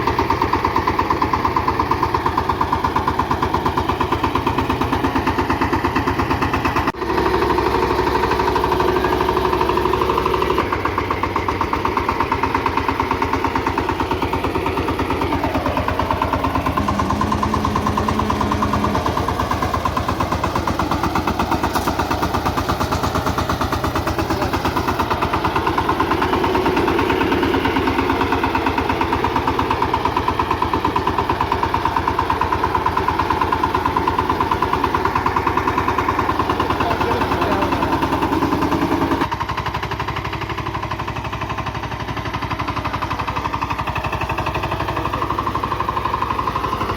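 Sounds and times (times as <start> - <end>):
diesel tiller engine chugging: 0.0 - 46.9.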